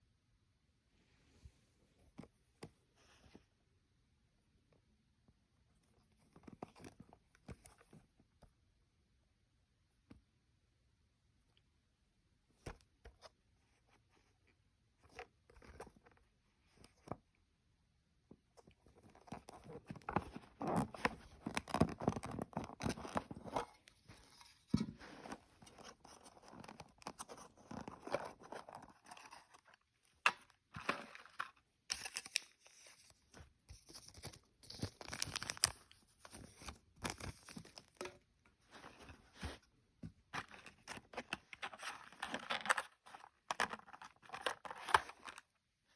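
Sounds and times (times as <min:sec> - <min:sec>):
packaging crinkling and tearing: 0:33.8 - 0:38.0.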